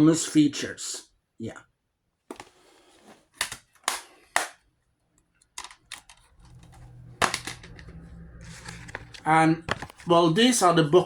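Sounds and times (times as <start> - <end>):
plastic case snapping and clicking: 3.4 - 4.6.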